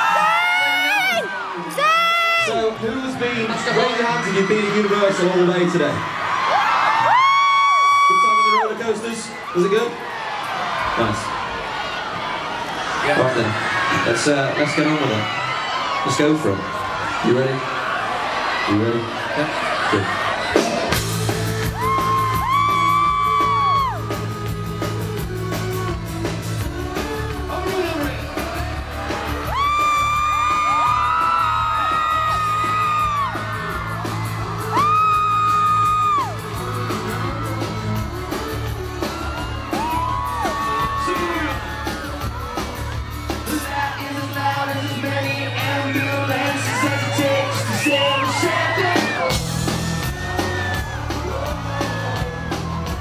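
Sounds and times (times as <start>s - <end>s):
crowd screaming and singing along: 0.0s - 53.0s
live pop band with singing: 19.6s - 53.0s.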